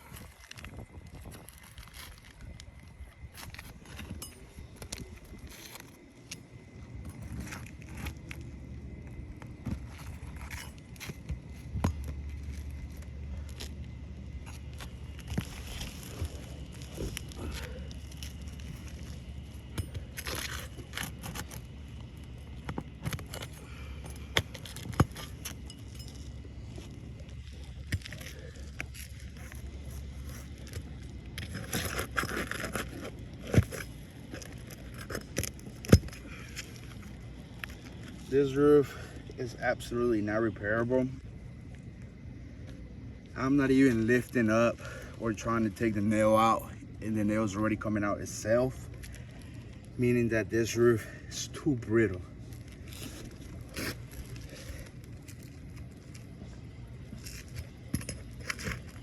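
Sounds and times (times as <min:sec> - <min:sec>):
scraping and crackling shingles: 0:00.0 - 0:39.4, 0:51.3 - 0:59.0
steady low rumble: 0:00.0 - 0:59.0.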